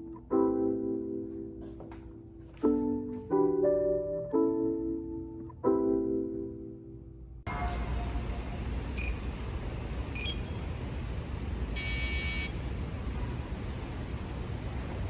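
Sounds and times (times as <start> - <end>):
city street traffic rumble: 7.5 - 15.0
long high electronic beep: 11.8 - 12.5.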